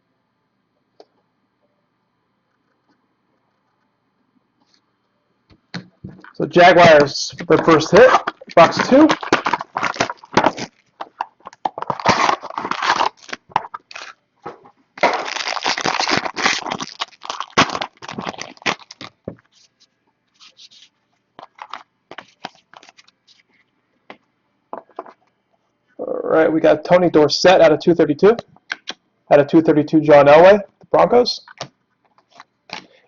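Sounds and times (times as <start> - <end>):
cards clicking and rustling: 6.2 - 19.2, 21.4 - 23.4
card packaging tearing and crinkling: 6.6 - 19.7, 20.4 - 23.4.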